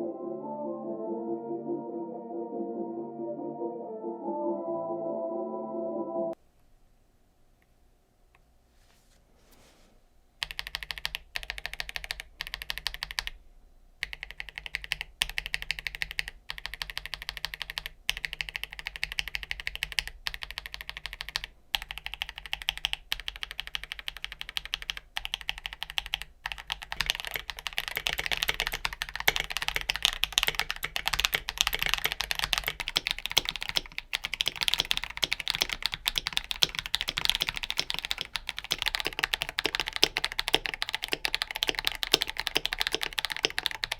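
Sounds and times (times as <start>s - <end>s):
fast typing on mechanical keyboard: 10.4s - 13.4s, 14.0s - 43.9s.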